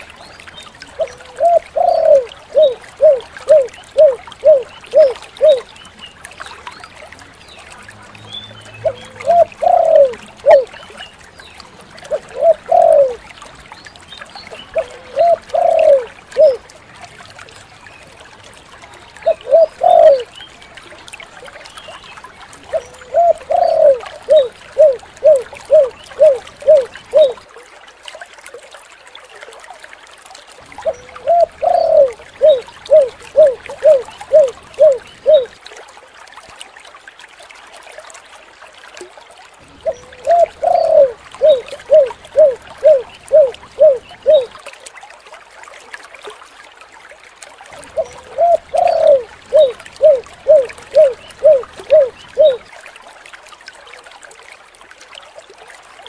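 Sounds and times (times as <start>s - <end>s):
dove cooing: 1.0s - 5.7s, 8.8s - 10.8s, 12.1s - 13.2s, 14.7s - 16.6s, 19.2s - 20.3s, 22.7s - 27.4s, 30.8s - 35.6s, 39.8s - 44.6s, 47.9s - 52.6s.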